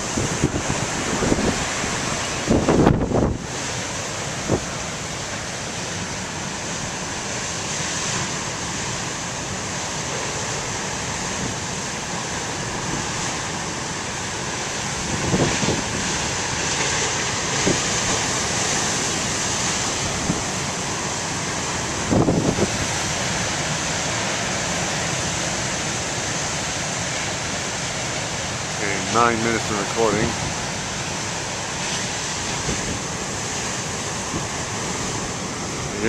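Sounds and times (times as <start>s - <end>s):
wind buffeting microphone: 0.0s - 5.0s, 14.4s - 23.9s, 28.8s - 36.0s
ocean surf breaking: 0.0s - 36.0s.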